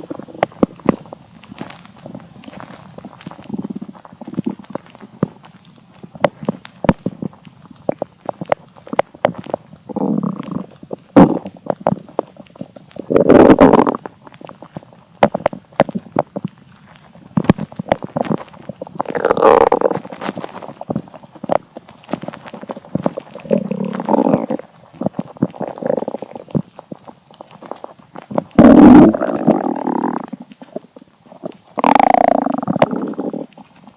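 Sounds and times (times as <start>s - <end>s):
stomach rumbling and gurgling: 0.0s - 33.9s.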